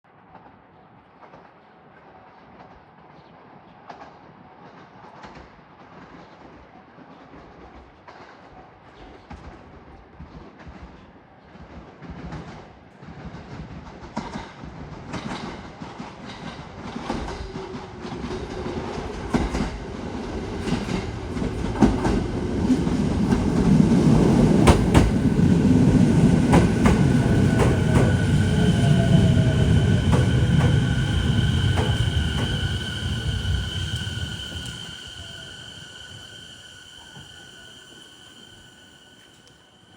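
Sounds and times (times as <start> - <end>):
electric train pulling in: 16.4 - 39.9
steady high whine: 23.0 - 39.9.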